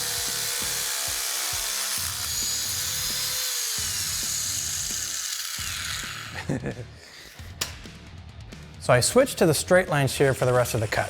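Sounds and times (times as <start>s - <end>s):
power tool cutting sheet steel: 0.0s - 7.7s, 10.2s - 11.0s.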